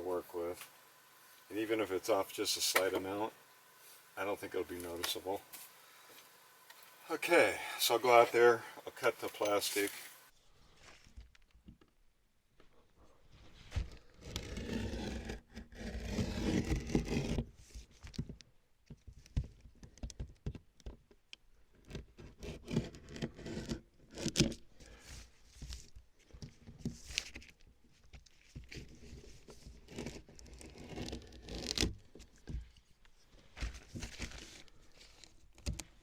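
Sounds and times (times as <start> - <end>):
plastic rustling and crinkling: 8.4 - 11.5, 31.8 - 36.0.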